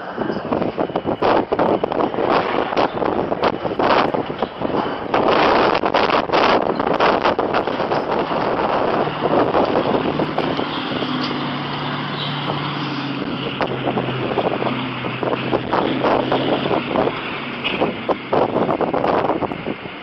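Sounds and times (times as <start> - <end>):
low engine hum: 0.0 - 20.0
wind buffeting microphone: 0.0 - 20.0.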